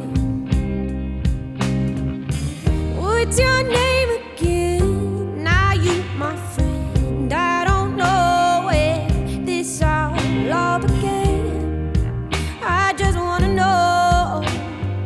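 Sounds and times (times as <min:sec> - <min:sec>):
sustained bass notes: 0:00.0 - 0:15.0
person singing: 0:03.0 - 0:15.0.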